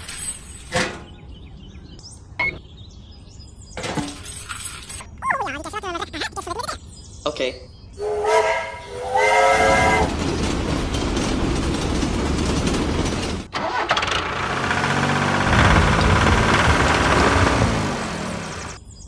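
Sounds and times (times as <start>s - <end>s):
loud engine running: 10.0s - 18.8s.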